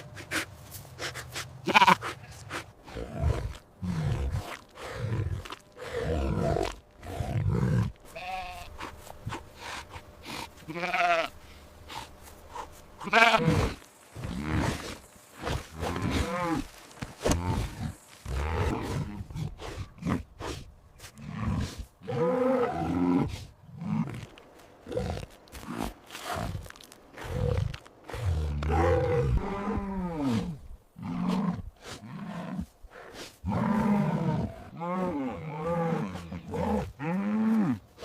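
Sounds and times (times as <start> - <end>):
sheep bleating: 1.6 - 2.2, 8.1 - 8.7, 10.6 - 11.3, 13.0 - 13.8.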